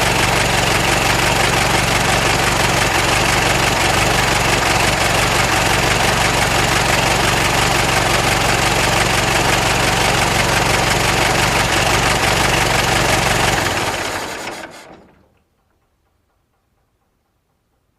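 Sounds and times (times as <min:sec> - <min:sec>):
old car engine idling: 0:00.0 - 0:15.6.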